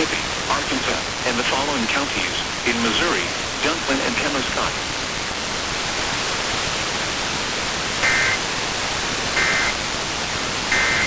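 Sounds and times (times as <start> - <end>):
radio static hiss: 0.0 - 5.5, 8.0 - 11.0
data tone bursts: 8.0 - 8.4, 9.4 - 9.8, 10.7 - 11.0.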